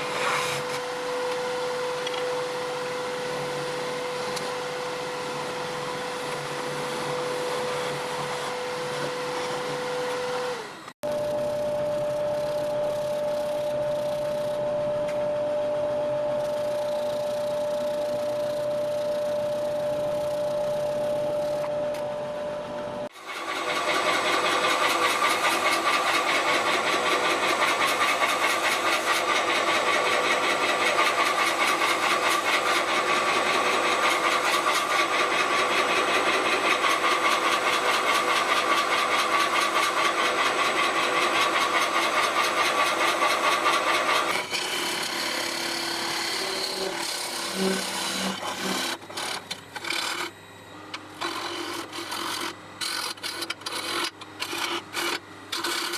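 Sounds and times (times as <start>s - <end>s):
wood lathe scraping: 0.0s - 0.8s, 23.1s - 50.4s, 51.1s - 55.9s.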